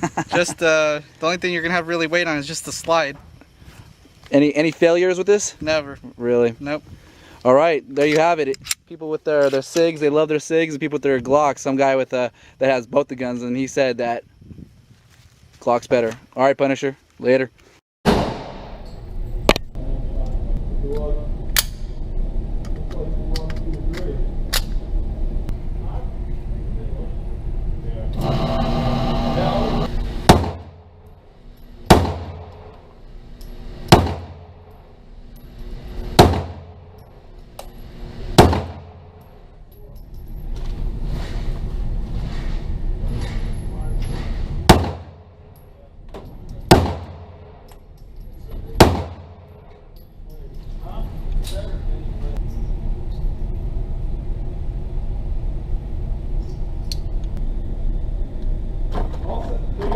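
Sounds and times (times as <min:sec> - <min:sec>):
steady low rumble: 0:18.2 - 0:59.9
handgun shots: 0:30.3 - 0:30.8, 0:31.9 - 0:32.8, 0:33.9 - 0:34.5, 0:36.2 - 0:36.8, 0:38.4 - 0:39.0, 0:44.7 - 0:45.2, 0:46.7 - 0:47.6, 0:48.8 - 0:49.5.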